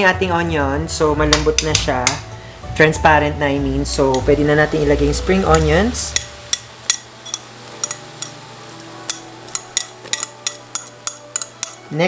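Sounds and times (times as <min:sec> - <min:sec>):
utensil tapping against pan: 0:01.3 - 0:02.3, 0:05.5 - 0:08.4, 0:09.0 - 0:12.0.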